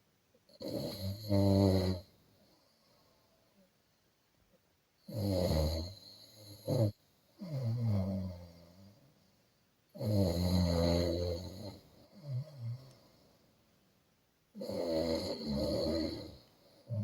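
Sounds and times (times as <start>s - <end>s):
person snoring: 0.6s - 2.1s, 5.1s - 9.0s, 10.0s - 13.0s, 14.6s - 17.0s.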